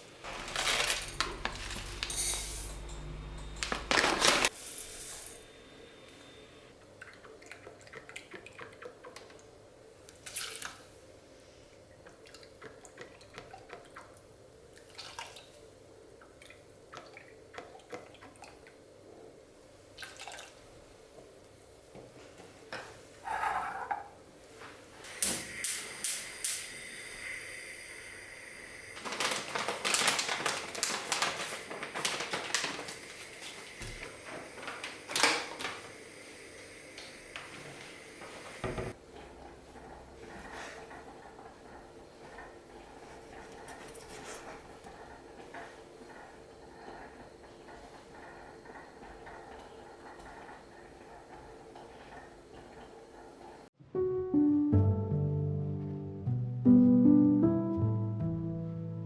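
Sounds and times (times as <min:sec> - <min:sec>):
dishes and utensils clinking: 0:00.3 - 0:05.5
tap running: 0:36.8 - 0:53.5.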